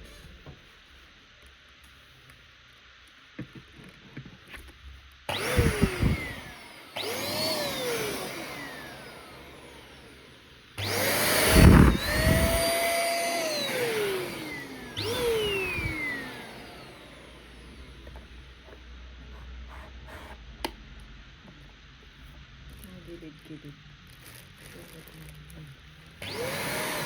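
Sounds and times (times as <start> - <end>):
vacuum cleaner motor whine: 5.3 - 20.3, 26.2 - 27.0.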